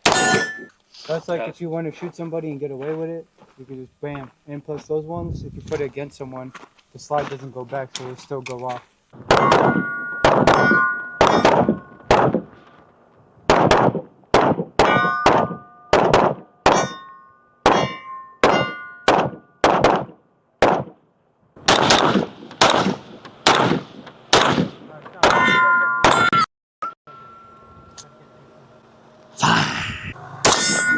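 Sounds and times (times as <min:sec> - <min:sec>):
steel targets ringing: 0:00.0 - 0:00.8, 0:09.3 - 0:12.1, 0:14.8 - 0:19.6, 0:25.3 - 0:28.7, 0:30.4 - 0:30.9
gunshots: 0:09.2 - 0:12.5, 0:13.5 - 0:16.9, 0:17.6 - 0:21.0, 0:21.6 - 0:26.3.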